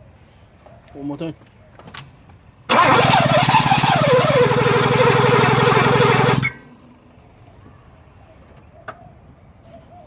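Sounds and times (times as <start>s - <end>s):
starter motor cranking engine: 2.7s - 6.6s.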